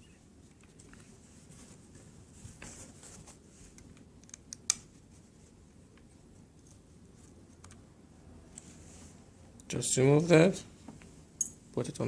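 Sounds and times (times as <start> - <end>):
faint rustling of parts: 0.3 - 7.9.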